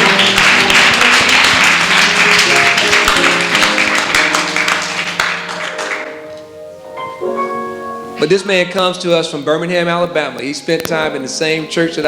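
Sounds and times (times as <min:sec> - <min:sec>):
congregation applauding: 0:00.0 - 0:06.6
church music held chords: 0:00.0 - 0:12.0.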